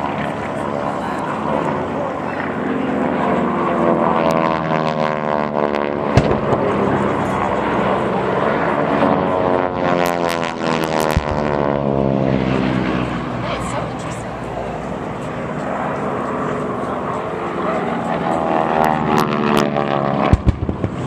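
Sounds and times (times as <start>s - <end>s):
propeller airplane passing overhead: 0.0s - 21.0s
sharp cracks: 6.1s - 7.0s, 20.3s - 21.0s.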